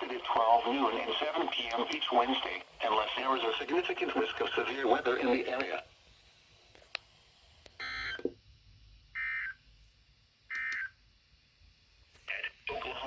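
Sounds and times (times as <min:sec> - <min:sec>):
faint radio hiss: 0:00.0 - 0:08.0, 0:11.2 - 0:13.0.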